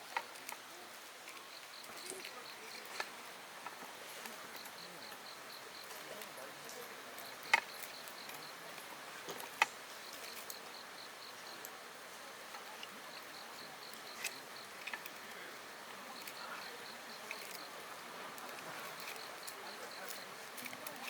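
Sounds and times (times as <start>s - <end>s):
insects chirping: 0.0s - 21.0s
steady hiss: 0.0s - 21.0s.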